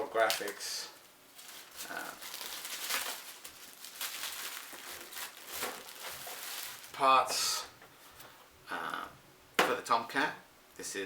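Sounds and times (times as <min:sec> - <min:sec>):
packaging crinkling and rustling: 0:00.1 - 0:07.4.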